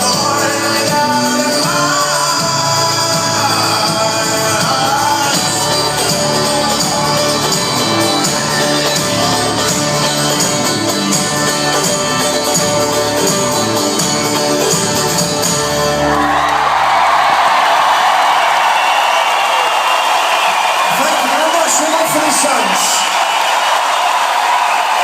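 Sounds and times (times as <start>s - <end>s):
person singing: 0.0s - 10.1s
folk-rock band playing: 0.0s - 23.4s
crowd cheering: 14.6s - 25.0s.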